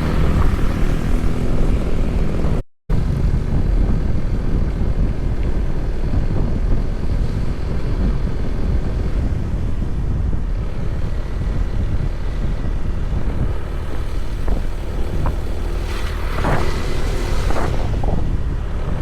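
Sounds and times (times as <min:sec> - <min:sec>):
wind buffeting microphone: 0:00.0 - 0:19.0
rush of hiss: 0:13.4 - 0:18.1.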